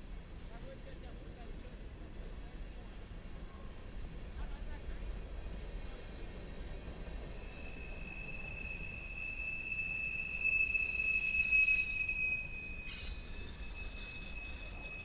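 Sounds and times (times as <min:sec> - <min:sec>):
high-pitched wheel squeal: 0:07.3 - 0:15.0
brief scraping burst: 0:12.8 - 0:14.8.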